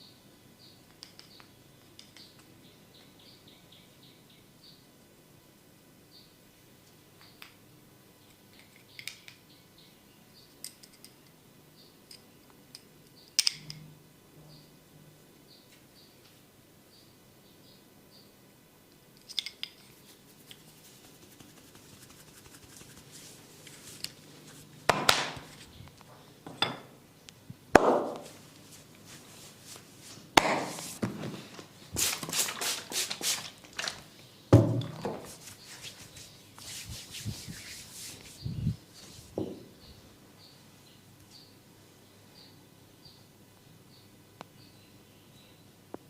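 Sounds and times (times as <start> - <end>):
hands rubbing skin: 19.9 - 25.8, 28.1 - 31.0, 32.0 - 33.7, 35.2 - 39.4
hands slapping a body: 24.9 - 25.6, 30.4 - 31.2.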